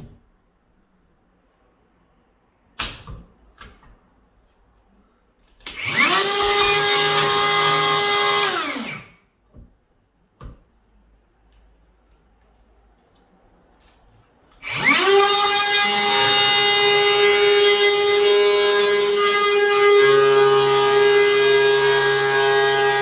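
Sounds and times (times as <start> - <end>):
cordless router whining: 5.8 - 9.0, 14.6 - 23.0.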